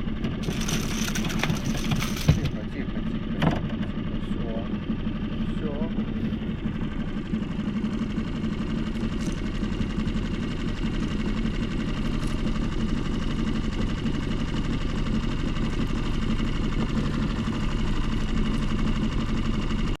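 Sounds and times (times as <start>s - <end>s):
engine running steadily: 0.0s - 20.0s.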